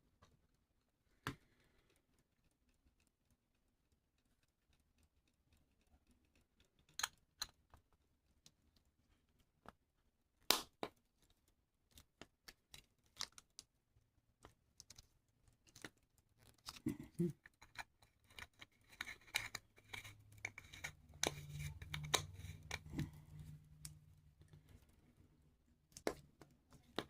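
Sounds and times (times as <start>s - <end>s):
small clicks and taps of tools: 1.2s - 9.8s, 14.4s - 25.1s, 25.9s - 27.0s
low steady hum: 19.0s - 27.0s.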